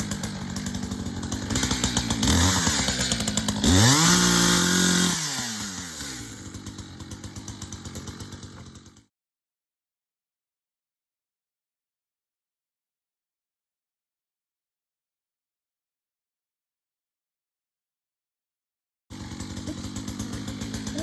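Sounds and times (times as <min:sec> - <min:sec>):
chainsaw idling and revving: 0:00.0 - 0:09.1, 0:19.1 - 0:21.0.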